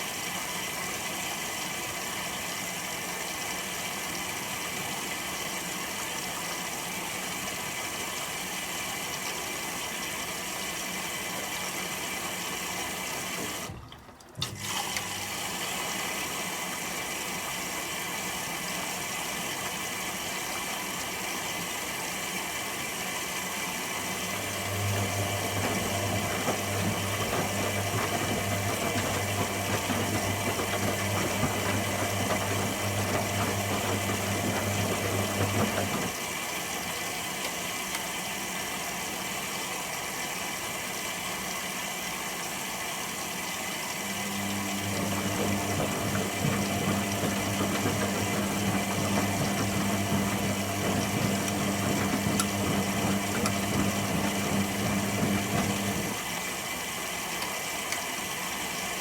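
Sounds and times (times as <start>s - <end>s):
washing machine rinsing: 0.0s - 59.0s.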